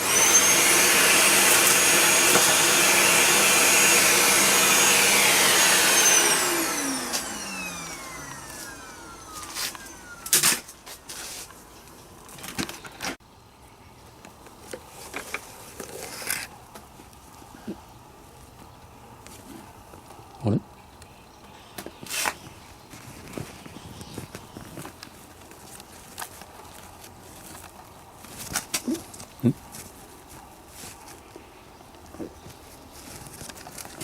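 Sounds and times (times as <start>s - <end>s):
vacuum cleaner running: 0.0s - 10.7s.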